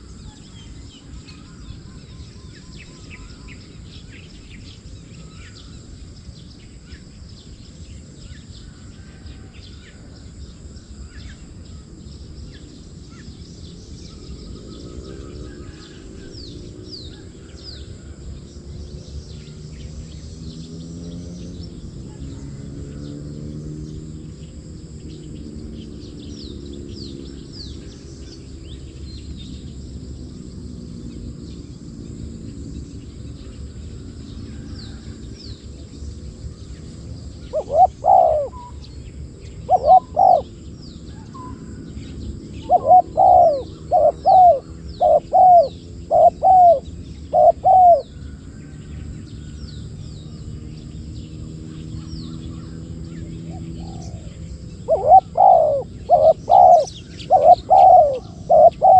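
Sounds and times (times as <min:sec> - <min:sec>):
small birds chirping: 0:00.0 - 0:58.9
dove cooing: 0:37.3 - 0:38.8, 0:39.6 - 0:40.6, 0:42.4 - 0:48.1, 0:53.4 - 0:58.9.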